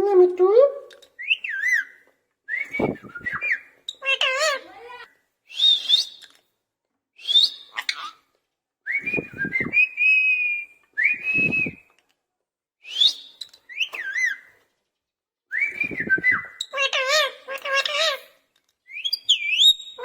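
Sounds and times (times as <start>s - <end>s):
parrot whistling and chirping: 1.2s - 4.6s, 5.5s - 6.2s, 7.2s - 8.2s, 12.9s - 14.5s, 15.6s - 18.2s, 18.9s - 20.0s.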